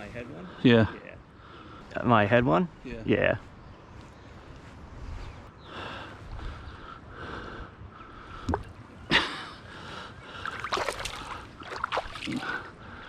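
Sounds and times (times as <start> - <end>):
river current running: 9.7 - 13.0
splashing in water: 10.4 - 12.7.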